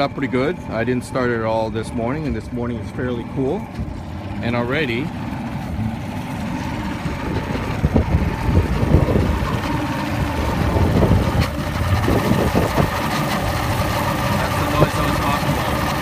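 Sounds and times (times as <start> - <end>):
outboard motor idling roughly: 0.0 - 16.0.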